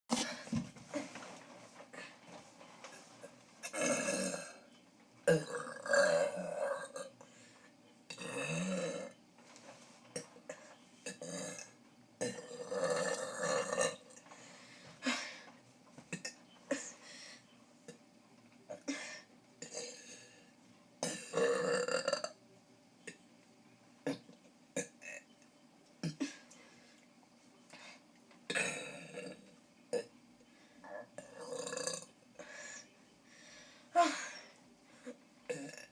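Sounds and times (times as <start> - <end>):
person burping: 3.6 - 4.6, 5.3 - 7.1, 8.1 - 9.2, 11.1 - 14.2, 21.0 - 22.4, 28.5 - 30.1, 35.5 - 35.9.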